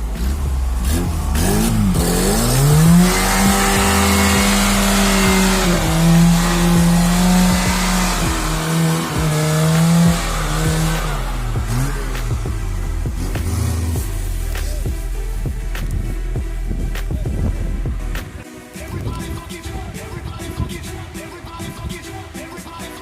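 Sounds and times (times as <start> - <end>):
vehicle engine revving: 0.0 - 18.4
loud rushing noise: 0.0 - 23.0.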